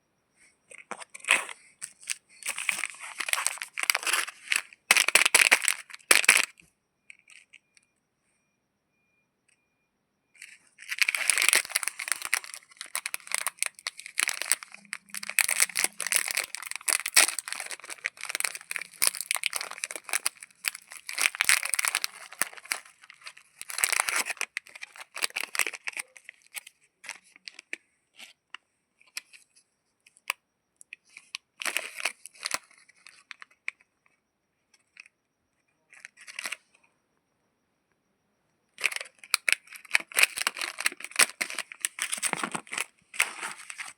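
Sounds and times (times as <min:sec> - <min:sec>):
wrapper tearing and crinkling: 0:01.2 - 0:06.5, 0:10.4 - 0:26.6, 0:38.8 - 0:43.9.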